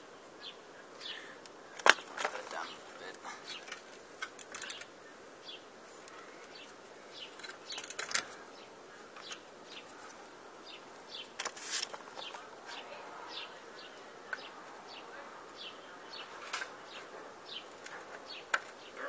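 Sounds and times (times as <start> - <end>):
small birds chirping: 0.0 - 19.0
metallic clicks and clatter of tools: 3.5 - 4.9, 7.3 - 8.4.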